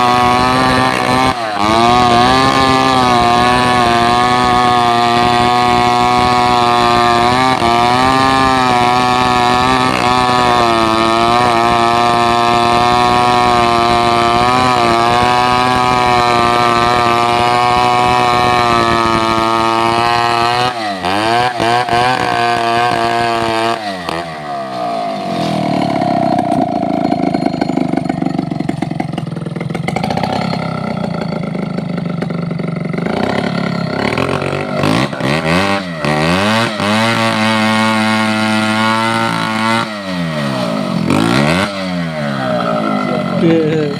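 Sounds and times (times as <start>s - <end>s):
chainsaw engine revving: 0.0s - 43.9s.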